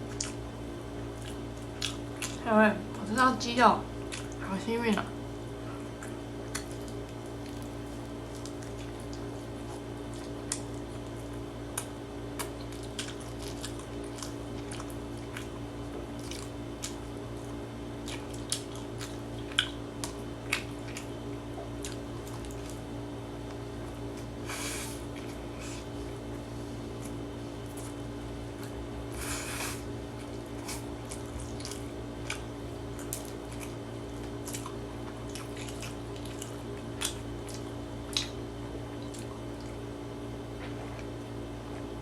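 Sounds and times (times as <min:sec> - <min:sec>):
person chewing: 0:00.0 - 0:02.4, 0:04.0 - 0:04.4, 0:05.8 - 0:39.9
steady low hum: 0:00.0 - 0:42.0
breathy hiss: 0:24.4 - 0:25.9, 0:29.1 - 0:29.9
wet mouth clicks and smacks: 0:35.4 - 0:38.4.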